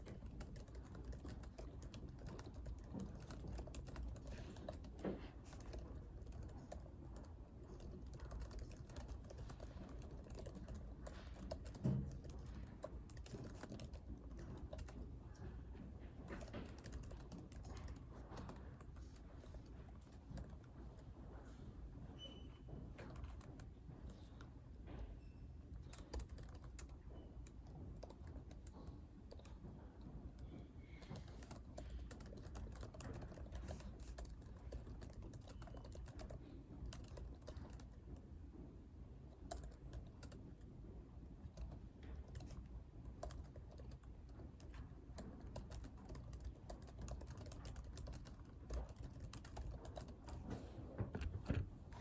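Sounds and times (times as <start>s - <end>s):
typing on computer keyboard: 0.0s - 15.6s, 16.2s - 21.1s, 22.2s - 38.3s, 39.3s - 40.7s, 41.4s - 50.6s
low room hum: 0.0s - 52.0s.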